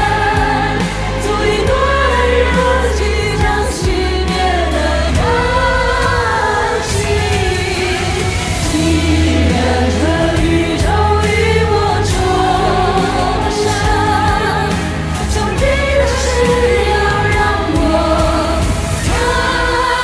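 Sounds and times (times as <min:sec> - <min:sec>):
pop ballad with singing: 0:00.0 - 0:20.0.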